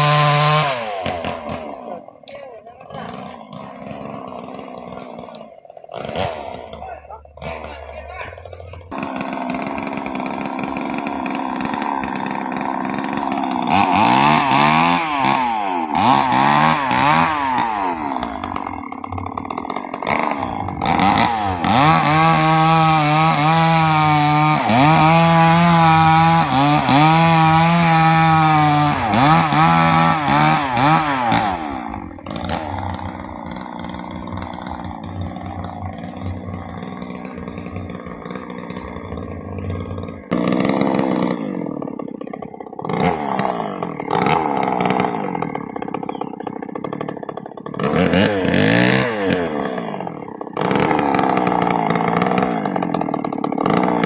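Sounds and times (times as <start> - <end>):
chainsaw cutting wood: 0.0 - 54.0.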